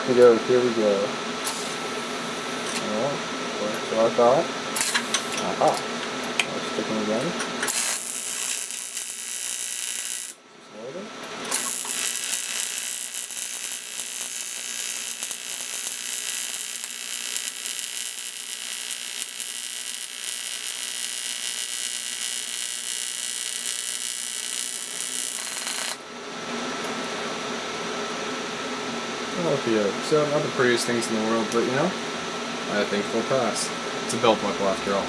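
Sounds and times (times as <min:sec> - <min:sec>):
welding arc buzzing and crackling: 0:00.0 - 0:26.9, 0:30.6 - 0:35.0.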